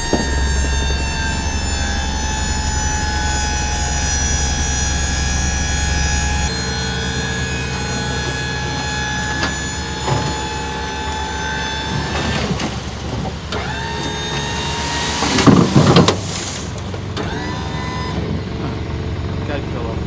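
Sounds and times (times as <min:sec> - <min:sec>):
dump truck engine running: 0:00.0 - 0:20.0
loud clattering burst: 0:06.5 - 0:20.0.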